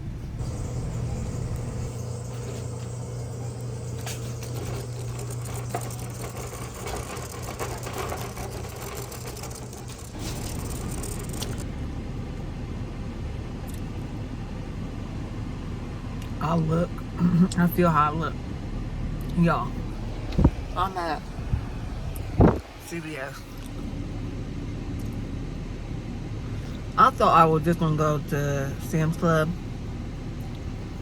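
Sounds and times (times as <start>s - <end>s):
car cabin low hum: 0.0s - 31.0s
clicks and rattles: 0.4s - 11.6s.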